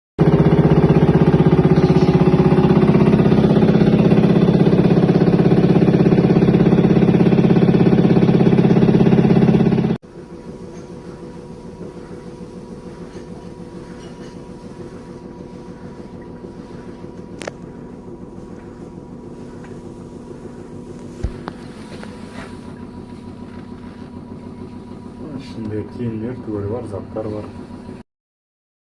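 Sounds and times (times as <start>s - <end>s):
washing machine knocking: 0.2s - 14.6s
washing machine spinning rumble: 0.2s - 28.0s.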